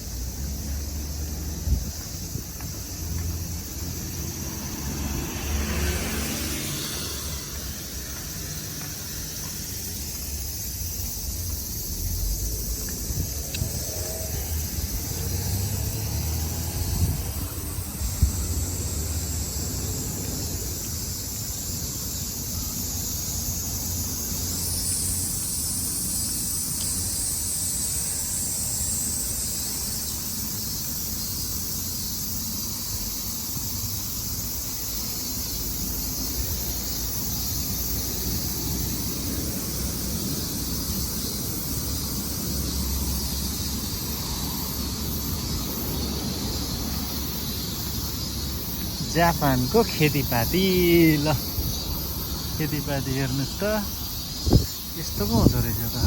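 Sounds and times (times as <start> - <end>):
strong wind buffeting microphone: 12.4 - 15.6, 16.6 - 18.7, 54.1 - 56.0.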